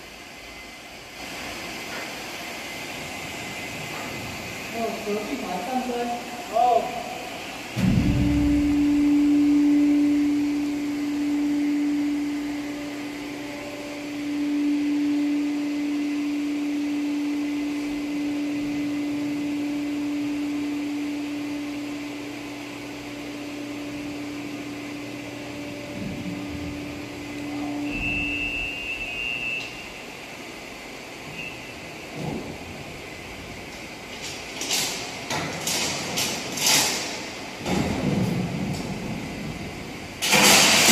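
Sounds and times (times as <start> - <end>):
short high beep: 27.6 - 29.9.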